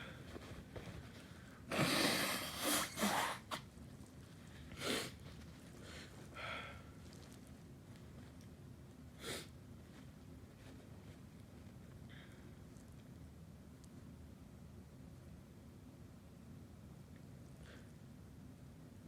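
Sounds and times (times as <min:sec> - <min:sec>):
person sneezing loudly: 0:01.7 - 0:03.6.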